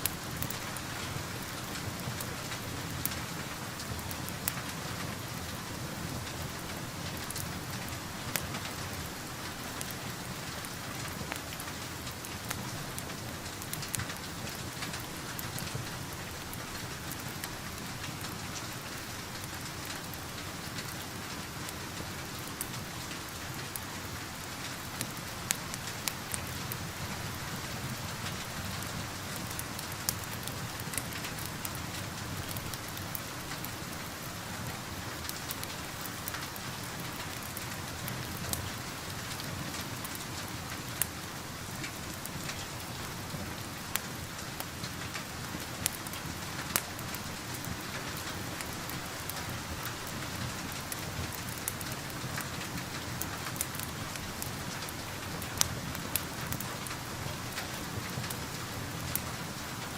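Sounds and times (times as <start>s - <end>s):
steady rain: 0.0s - 59.9s
wood fire crackling: 0.0s - 59.9s.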